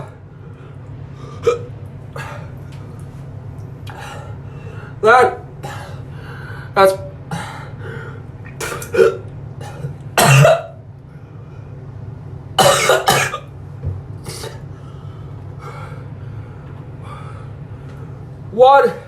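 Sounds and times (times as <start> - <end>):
man coughing: 5.6 - 6.0, 7.3 - 7.8, 8.6 - 10.8, 12.6 - 13.5
man clearing his throat: 8.6 - 10.8, 12.6 - 13.5.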